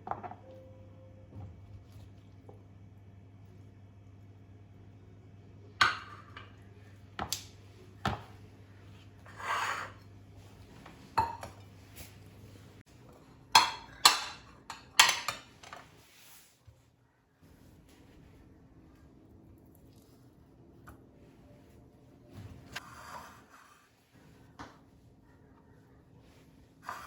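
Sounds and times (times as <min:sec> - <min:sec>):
dishes and cutlery clinking: 0:13.5 - 0:15.8.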